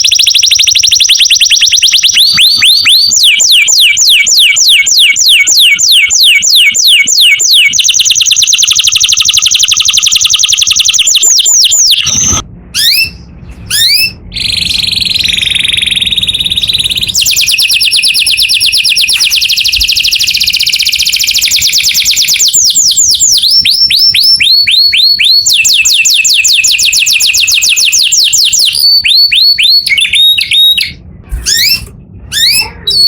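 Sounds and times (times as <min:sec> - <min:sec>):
canary singing: 0:00.0 - 0:33.0.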